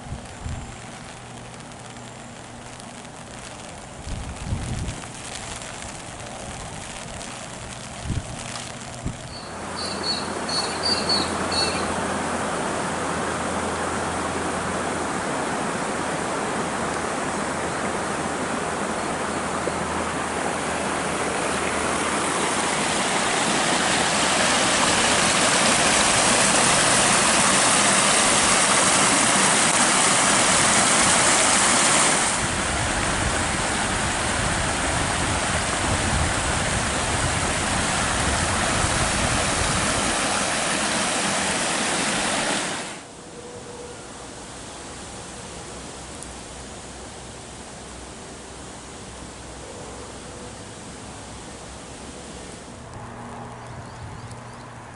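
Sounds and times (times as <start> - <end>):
floodwater rushing: 0.0 - 43.1
short high chirps: 9.3 - 11.9.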